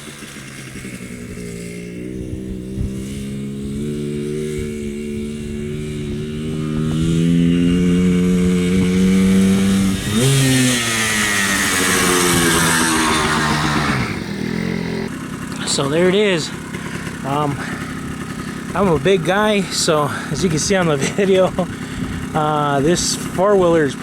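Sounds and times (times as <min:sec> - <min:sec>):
two-stroke engine revving: 0:00.0 - 0:24.0.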